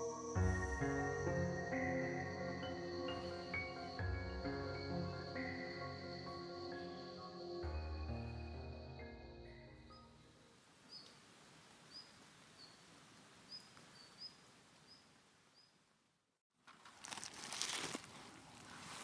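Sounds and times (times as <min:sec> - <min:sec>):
soft music: 0:00.0 - 0:10.7
small bird chirping: 0:09.9 - 0:11.2, 0:11.9 - 0:12.9, 0:13.5 - 0:15.8
crinkling crackling rustle: 0:16.6 - 0:19.0.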